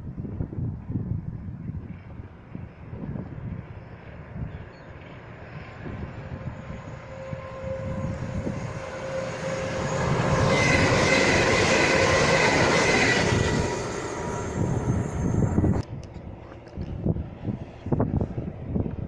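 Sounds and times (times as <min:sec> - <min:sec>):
train wheels rushing on rail: 0:00.2 - 0:19.0
steady high whine: 0:05.2 - 0:16.3.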